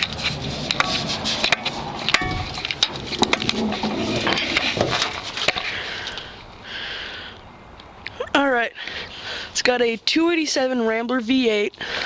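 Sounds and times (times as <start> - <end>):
object handled knocking and scraping: 0.0 - 5.7.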